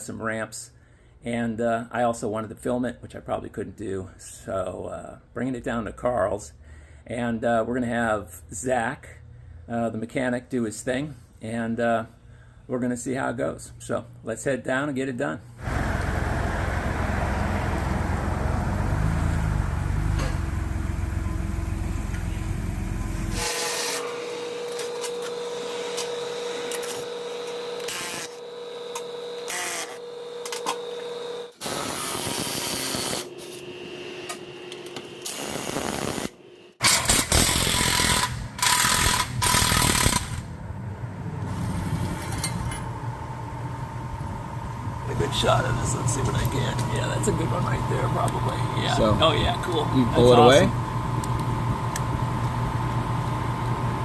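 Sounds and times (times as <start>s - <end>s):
vehicle road rumble: 15.6s - 23.4s, 40.3s - 54.0s
hand and power tools: 23.1s - 40.5s.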